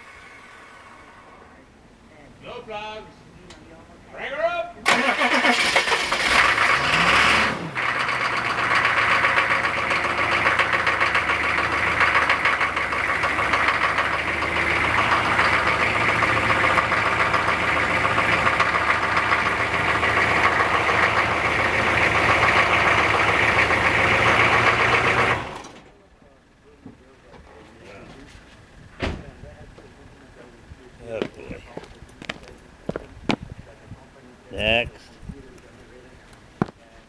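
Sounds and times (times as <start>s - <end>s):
diesel engine idling with knock: 6.1s - 30.6s.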